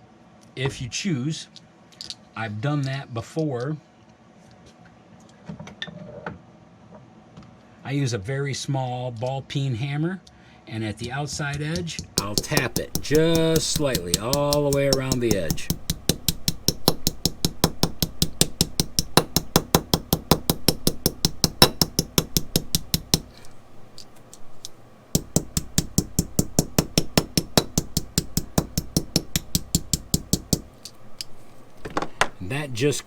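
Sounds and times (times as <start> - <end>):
small hammer tapping metal: 12.2 - 32.9.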